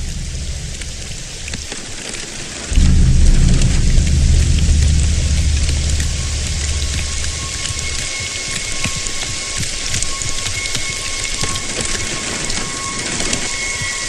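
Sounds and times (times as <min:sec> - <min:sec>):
low rumble: 0:00.0 - 0:01.7, 0:02.7 - 0:09.2
steady rain falling: 0:00.0 - 0:09.2.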